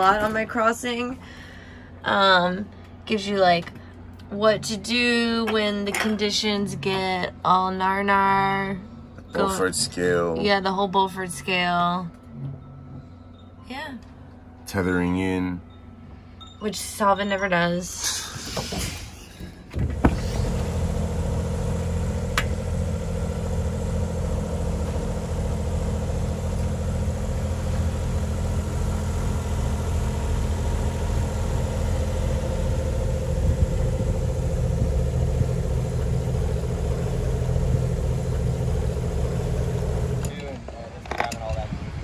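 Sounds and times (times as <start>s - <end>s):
boat engine running: 19.7s - 40.3s.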